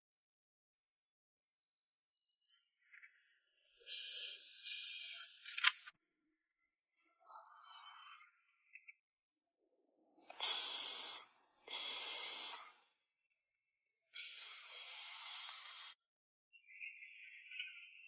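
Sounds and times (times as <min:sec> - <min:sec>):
steady hissing: 0:10.3 - 0:12.7, 0:14.2 - 0:16.0.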